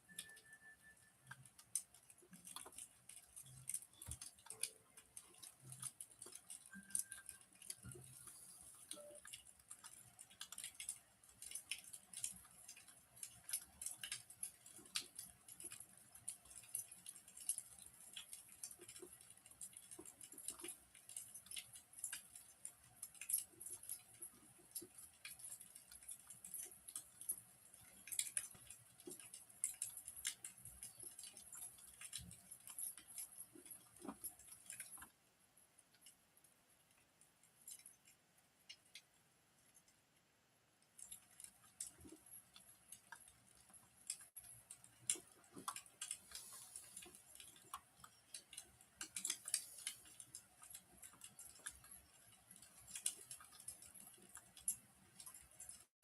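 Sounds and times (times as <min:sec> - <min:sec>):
wood fire crackling: 0:00.2 - 0:35.0.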